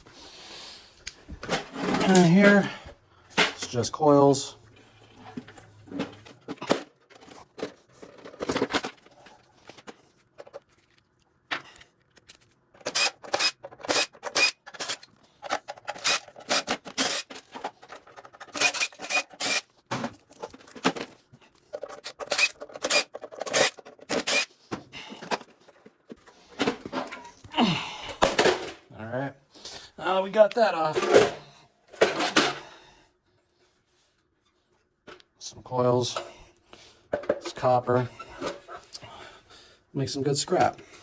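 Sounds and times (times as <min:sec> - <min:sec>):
metal clanks and rattles: 0:30.8 - 0:32.7.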